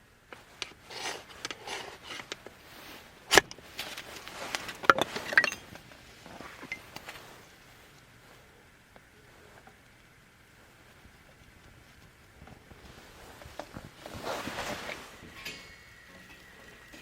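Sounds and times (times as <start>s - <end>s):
camp gear rustling: 0.2s - 17.0s
metal cookware clinking: 4.8s - 5.7s, 15.2s - 17.0s.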